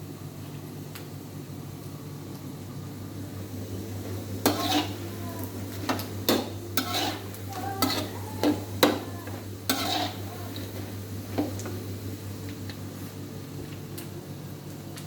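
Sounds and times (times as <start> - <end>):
steady low hum: 0.0 - 15.0
utensil scraping a pan: 4.4 - 11.5.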